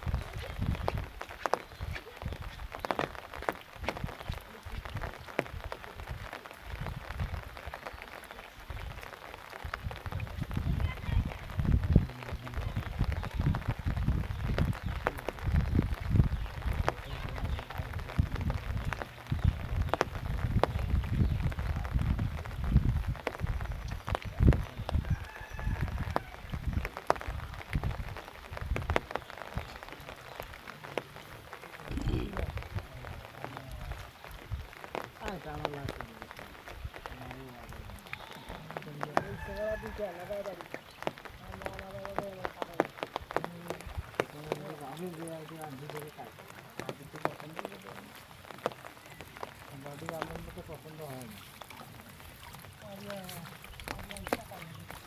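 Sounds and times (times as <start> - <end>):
water splashing: 0.0 - 55.0.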